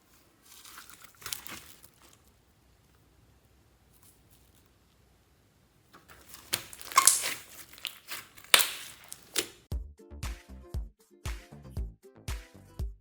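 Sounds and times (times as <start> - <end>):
slime squeezed crackling and popping: 0.6 - 2.1, 6.0 - 9.6.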